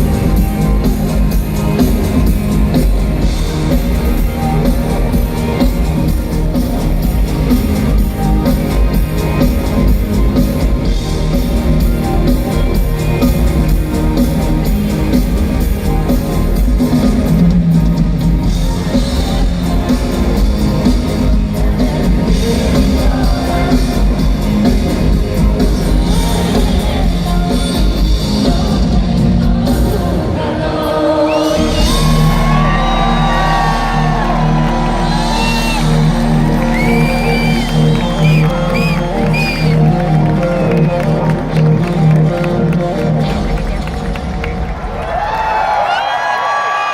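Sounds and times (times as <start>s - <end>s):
live pop-rock band: 0.0s - 45.8s
person singing: 18.7s - 43.7s
audience screaming and whooping: 31.1s - 46.9s.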